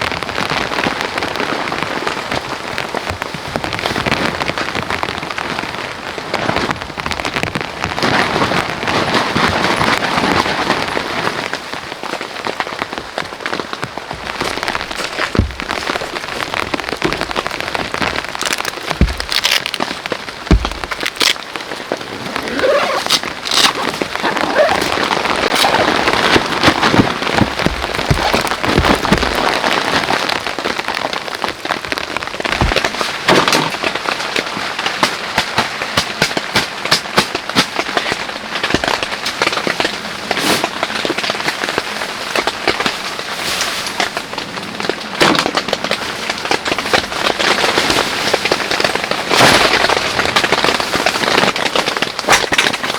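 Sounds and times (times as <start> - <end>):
heavy rain: 0.0 - 52.9
dull thuds: 13.9 - 21.6, 22.3 - 30.4, 31.8 - 33.1.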